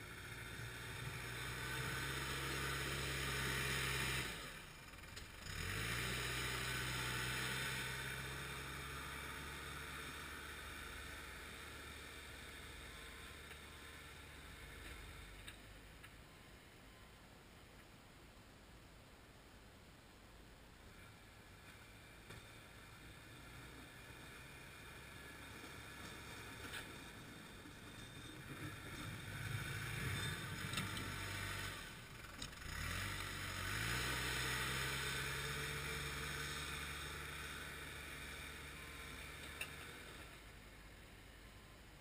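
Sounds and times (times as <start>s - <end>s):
loader diesel engine revving: 0.0s - 15.5s, 21.8s - 40.4s.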